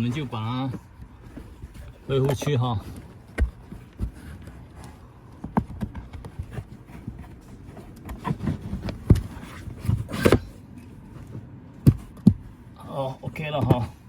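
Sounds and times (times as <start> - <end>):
rubbing: 0.0 - 10.4.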